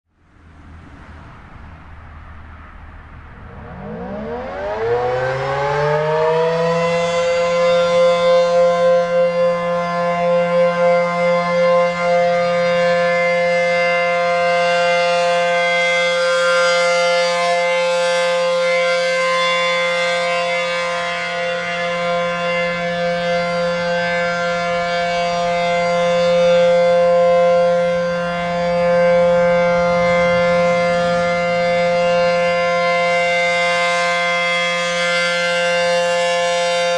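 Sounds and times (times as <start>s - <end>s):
outdoor warning siren wailing: 0.2s - 36.9s.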